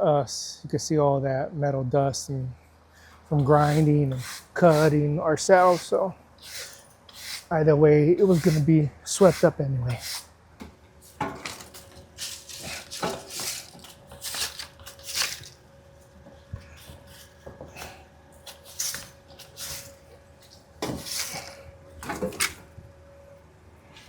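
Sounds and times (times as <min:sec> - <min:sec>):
faint steady hum: 0:00.0 - 0:24.0
broom sweeping floor: 0:03.4 - 0:07.6, 0:08.2 - 0:10.3, 0:11.0 - 0:15.6, 0:16.6 - 0:21.6.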